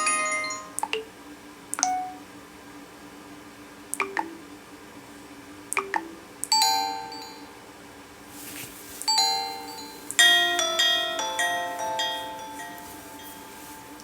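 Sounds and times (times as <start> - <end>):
bright bell-like chime: 0.0 - 0.8, 6.6 - 7.6, 9.1 - 14.0.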